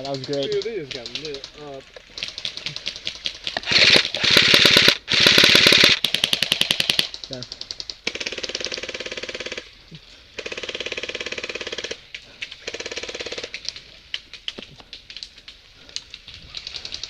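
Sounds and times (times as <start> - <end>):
airsoft rifles firing bursts: 0.0 - 9.7, 10.4 - 12.0, 12.6 - 13.6.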